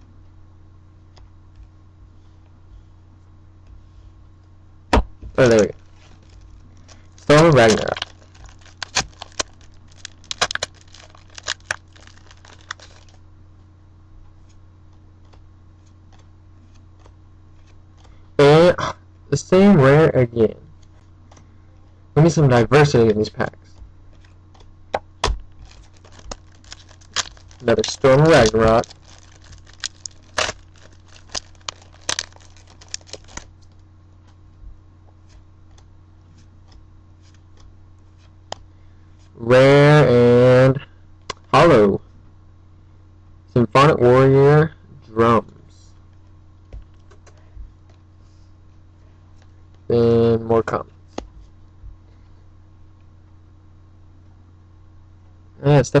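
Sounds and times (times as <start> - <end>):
low steady hum: 0.0 - 56.0
foil wrapper crinkling and tearing: 5.4 - 13.2, 25.3 - 33.8.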